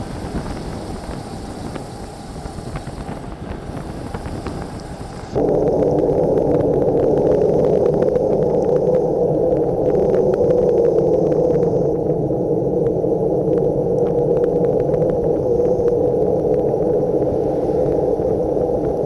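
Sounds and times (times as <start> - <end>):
bicycle on wet road: 0.0 - 8.4, 14.4 - 19.0
wind over microphone: 0.0 - 19.0.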